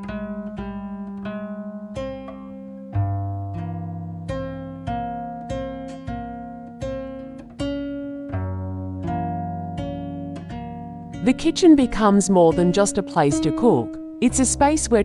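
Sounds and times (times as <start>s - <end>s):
slow acoustic guitar music: 0.0s - 15.0s.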